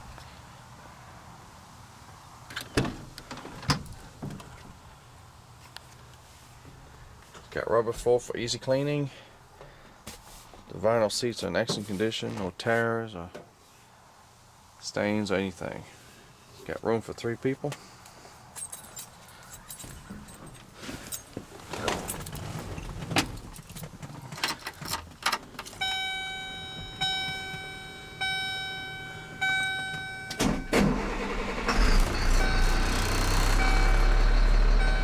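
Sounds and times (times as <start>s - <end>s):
keys rattling and clicking: 18.5s - 25.8s
dashboard warning chime: 25.8s - 35.0s
diesel engine starting and running: 25.8s - 35.0s.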